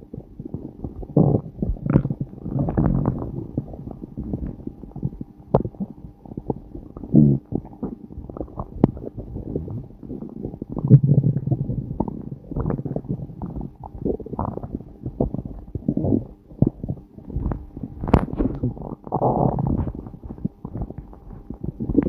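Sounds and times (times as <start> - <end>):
stomach growling: 0.0 - 22.0
bubbly pops and clicks: 17.4 - 22.0.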